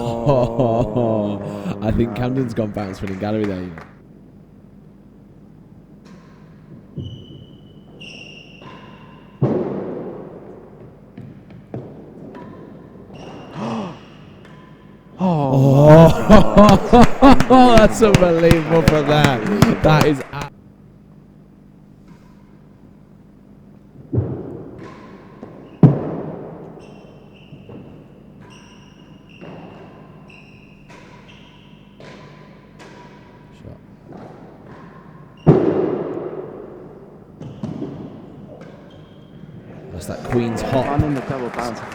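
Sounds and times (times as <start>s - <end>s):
ball knocks echoing off walls: 9.4s - 13.4s.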